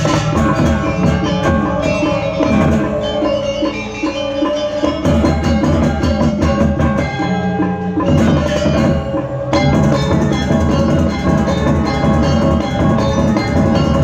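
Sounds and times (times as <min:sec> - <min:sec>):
drums: 0:00.0 - 0:14.0.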